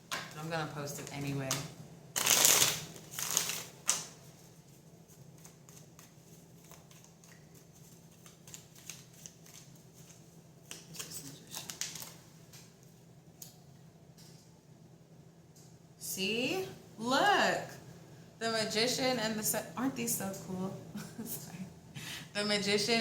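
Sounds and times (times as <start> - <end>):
cards rustling and shuffling: 2.2 - 12.7.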